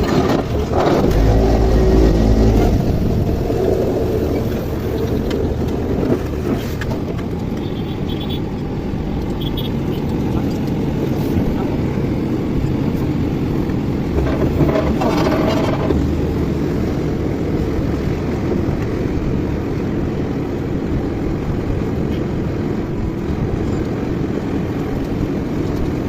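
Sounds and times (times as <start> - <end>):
engine running: 0.0 - 22.0.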